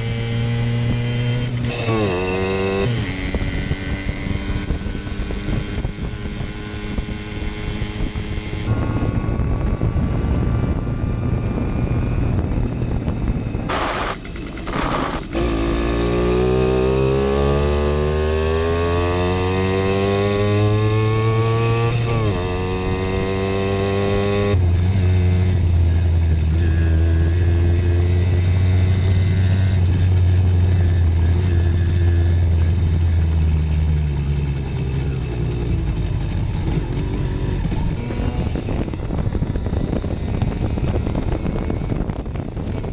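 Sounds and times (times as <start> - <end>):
two-stroke moped engine: 0.0 - 8.7, 13.1 - 16.3, 29.6 - 42.9.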